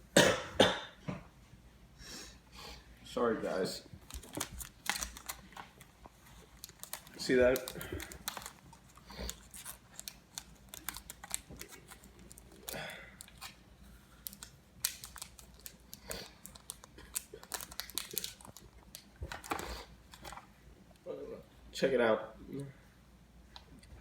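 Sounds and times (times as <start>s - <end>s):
packaging rustling: 4.0s - 20.5s.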